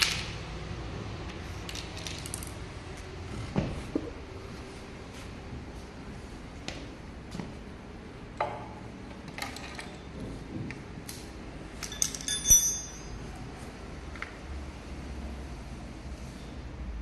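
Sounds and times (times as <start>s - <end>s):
metal tools clinking: 11.8s - 13.3s.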